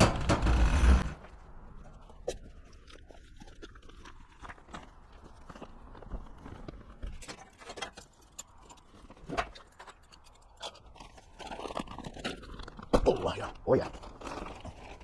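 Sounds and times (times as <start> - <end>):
knocks clicks and scrapes: 0.0 - 1.2.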